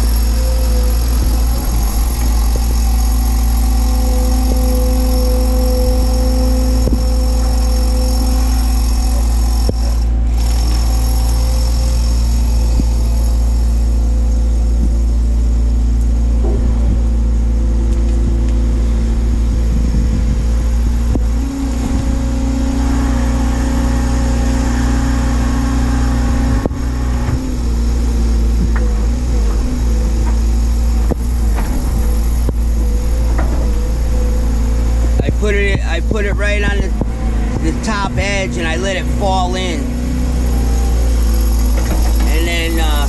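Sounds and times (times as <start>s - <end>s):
excavator diesel engine running: 0.0s - 43.0s.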